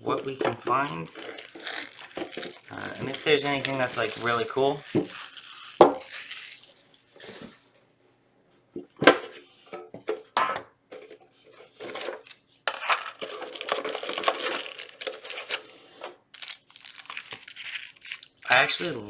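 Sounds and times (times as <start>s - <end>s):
packaging crinkling: 0.0s - 7.5s, 11.8s - 19.0s.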